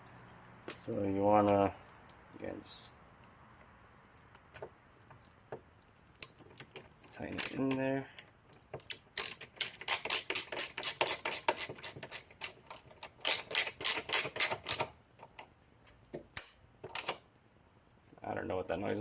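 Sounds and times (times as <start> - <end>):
screwdriver ratchet clicks: 8.8 - 14.9.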